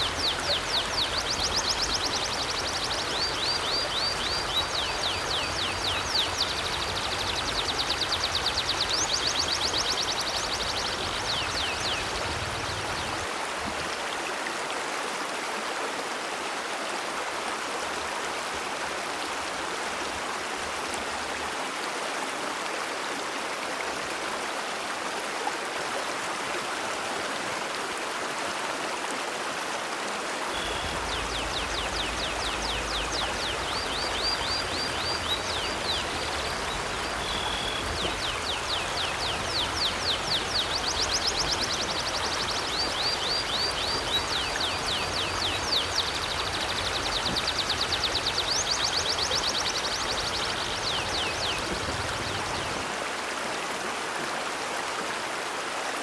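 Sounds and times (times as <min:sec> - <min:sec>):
bird chirping: 0:00.0 - 0:12.2, 0:30.5 - 0:52.8
river rushing: 0:00.0 - 0:56.0.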